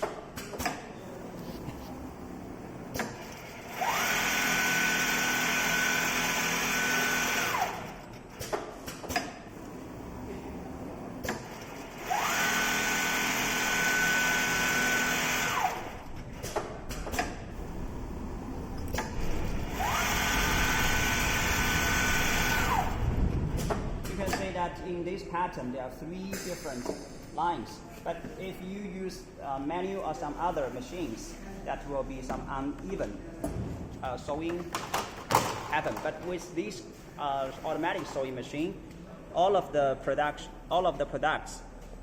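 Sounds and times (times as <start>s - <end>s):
sewing machine motor whine: 3.2s - 8.1s, 11.6s - 16.1s, 19.3s - 23.1s.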